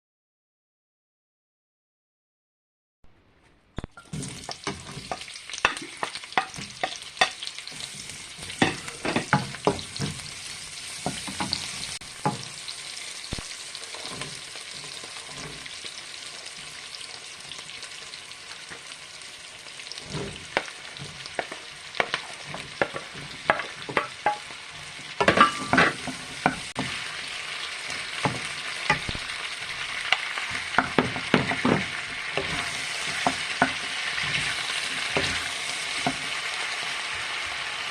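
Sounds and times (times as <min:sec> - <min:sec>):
food sizzling in a frying pan: 0:03.9 - 0:37.9
utensil scraping a pan: 0:04.0 - 0:12.6, 0:13.9 - 0:16.8, 0:19.9 - 0:36.5.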